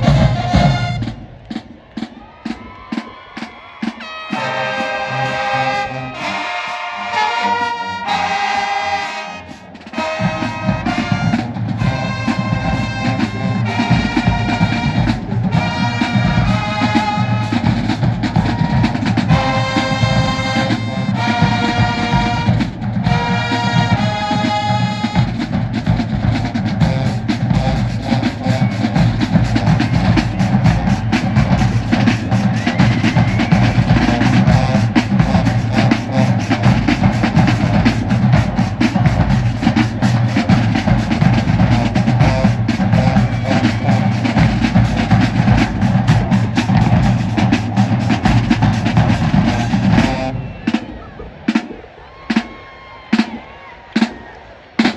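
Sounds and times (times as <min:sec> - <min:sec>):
bass and snare drums: 0:00.0 - 0:54.9
brass chord phrases: 0:04.0 - 0:26.0, 0:26.7 - 0:32.6, 0:33.8 - 0:50.5.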